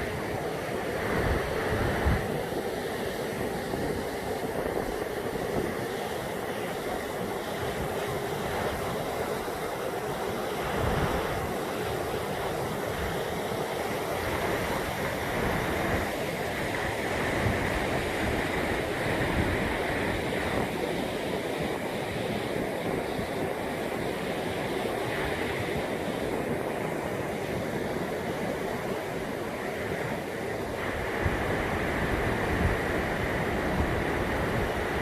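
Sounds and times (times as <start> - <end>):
wind buffeting microphone: 0.0 - 35.0.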